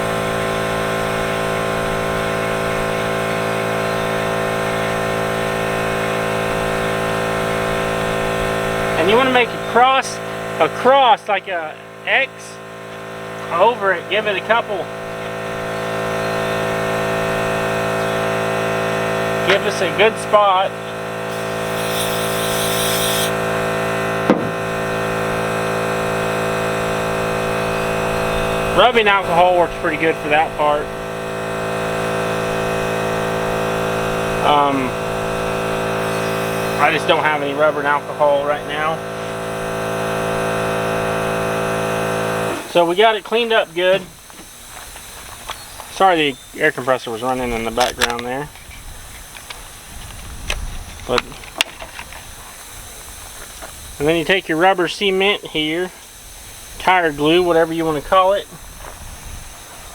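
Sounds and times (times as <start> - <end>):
air compressor motor hum: 0.0 - 59.9
brief air hiss: 21.4 - 23.3.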